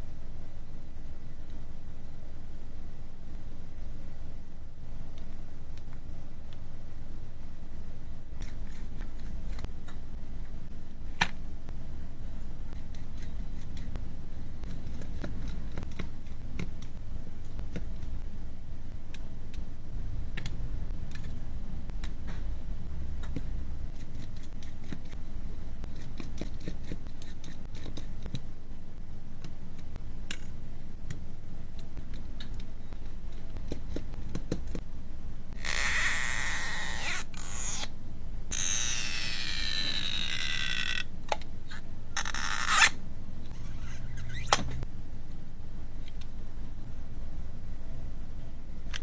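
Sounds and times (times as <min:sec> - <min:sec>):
tool scraping with squeals: 0:43.6 - 0:44.6.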